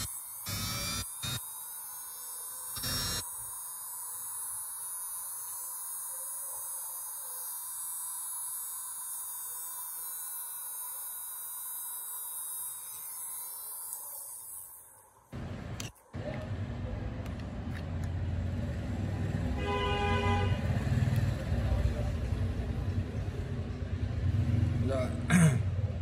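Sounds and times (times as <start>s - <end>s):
electric grinder grinding metal: 0.0s - 15.2s.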